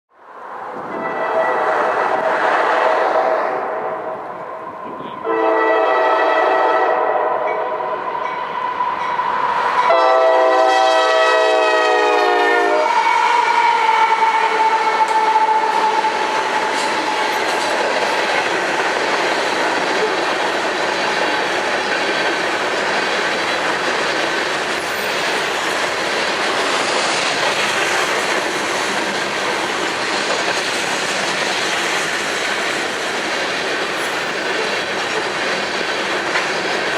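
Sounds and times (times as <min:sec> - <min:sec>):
train wheel and rail noise: 0:00.1 - 0:36.9
locomotive horn blasts: 0:01.0 - 0:04.1, 0:05.2 - 0:07.8, 0:09.8 - 0:16.1
clickety-clack over rail joints: 0:15.0 - 0:36.9.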